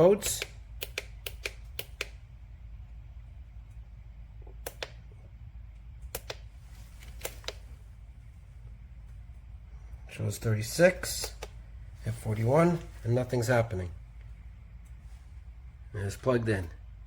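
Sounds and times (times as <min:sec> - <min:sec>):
low steady hum: 0:00.0 - 0:17.0
buttons clicking: 0:04.5 - 0:05.0, 0:06.0 - 0:06.5.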